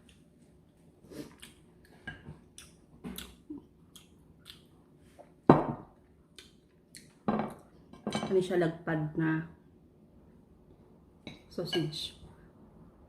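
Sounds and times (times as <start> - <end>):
person chewing noodles: 1.1 - 4.7.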